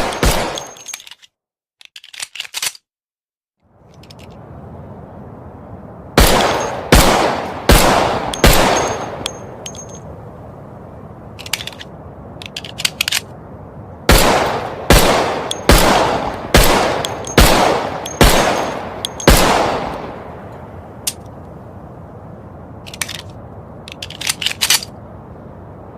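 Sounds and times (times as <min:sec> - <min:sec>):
pistol shots: 0:00.0 - 0:00.8, 0:06.2 - 0:09.2, 0:14.1 - 0:20.2.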